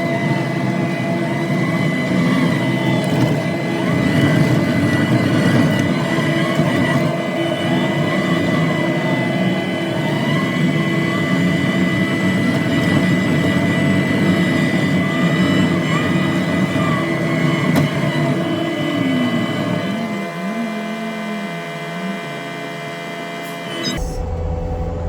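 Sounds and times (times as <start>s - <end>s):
diesel engine under load: 0.0s - 25.0s
high whine: 18.5s - 25.0s.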